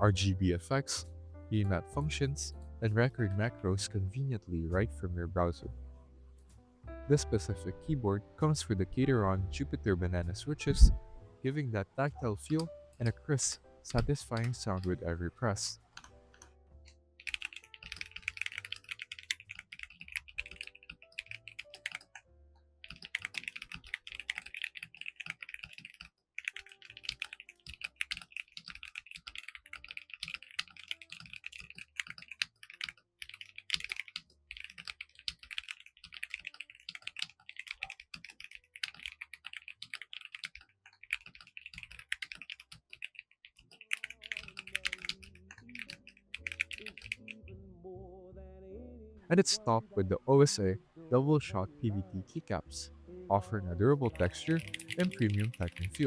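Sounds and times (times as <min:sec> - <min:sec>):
mechanical keyboard typing: 0:13.9 - 0:15.0, 0:17.2 - 0:22.2, 0:22.8 - 0:47.4, 0:54.0 - 0:56.0.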